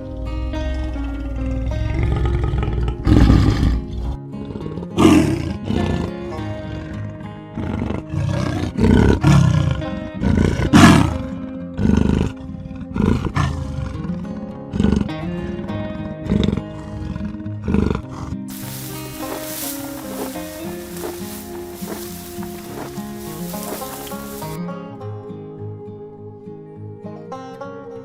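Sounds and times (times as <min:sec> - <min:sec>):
background music: 0:18.5 - 0:28.0.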